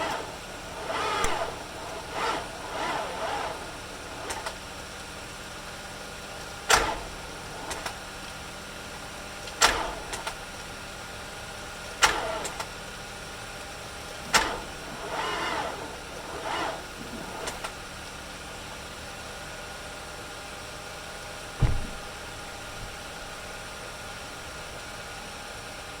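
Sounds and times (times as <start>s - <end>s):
car starter clunking and whirring: 0.0s - 25.4s.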